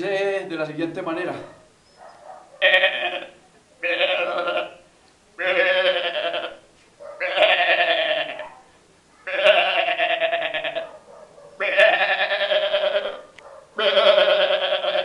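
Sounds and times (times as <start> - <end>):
man imitating goat bleats: 2.6 - 4.8, 5.4 - 6.6, 7.2 - 8.4, 9.3 - 10.8, 11.6 - 13.2, 13.8 - 15.0.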